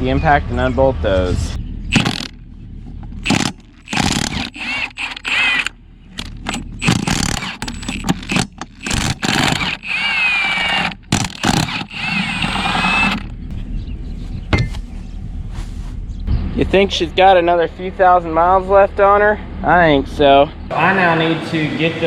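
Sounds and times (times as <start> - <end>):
impact wrench bursts: 1.9 - 2.4, 3.2 - 13.4.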